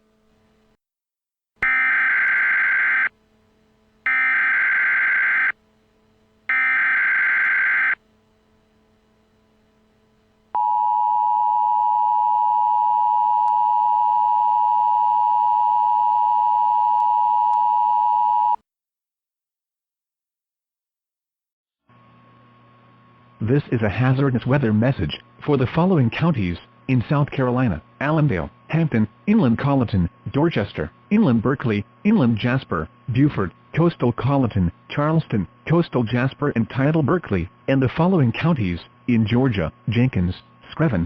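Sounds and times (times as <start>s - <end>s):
long steady alert tone: 1.6s - 3.1s, 4.1s - 5.6s, 6.5s - 8.0s
warbling data tones: 1.6s - 3.1s, 4.1s - 5.5s, 6.5s - 8.0s.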